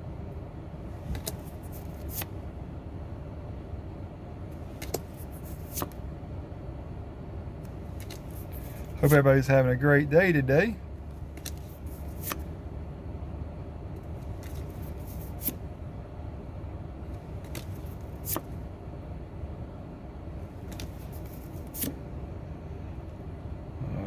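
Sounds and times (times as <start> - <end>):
cards sliding and rustling: 1.0 - 2.4, 4.6 - 6.0, 7.7 - 9.2, 11.1 - 12.5, 14.2 - 15.6, 17.1 - 18.6, 20.5 - 22.0
low hum: 10.5 - 24.0.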